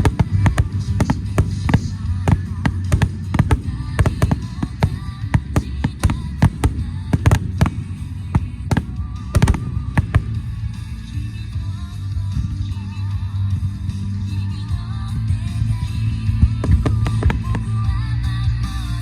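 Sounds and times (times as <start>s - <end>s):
firework shells bursting: 0.0s - 10.7s.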